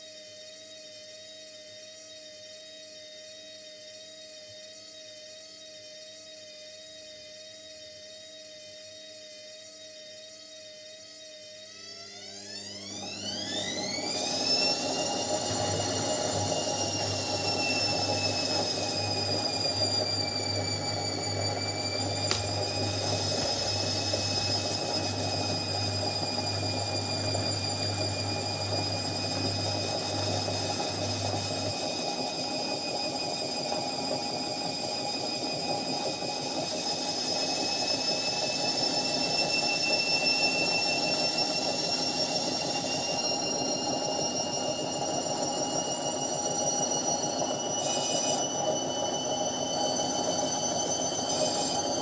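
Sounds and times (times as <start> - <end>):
washing machine spin whine: 0.0 - 52.0.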